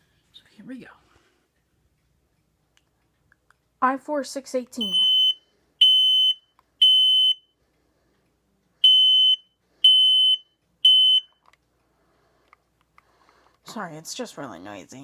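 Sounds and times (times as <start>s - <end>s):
smoke alarm beeping: 4.8s - 7.5s, 8.8s - 11.4s.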